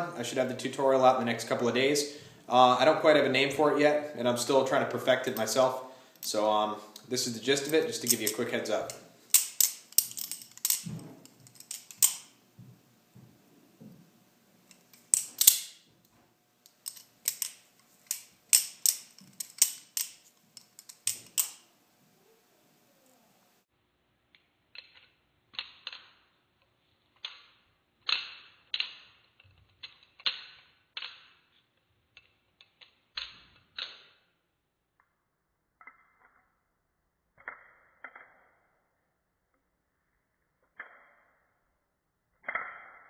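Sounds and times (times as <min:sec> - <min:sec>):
butterfly knife metallic clicking: 0:14.7 - 0:15.8.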